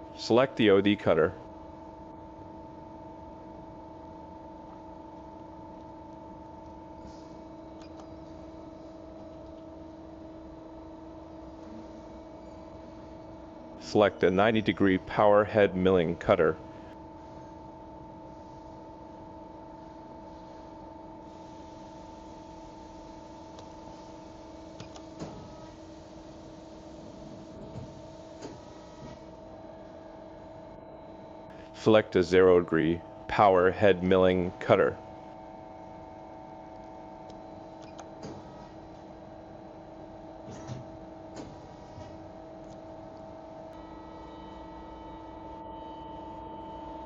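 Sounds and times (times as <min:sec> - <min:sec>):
electrical machine hum: 0:00.0 - 0:47.0.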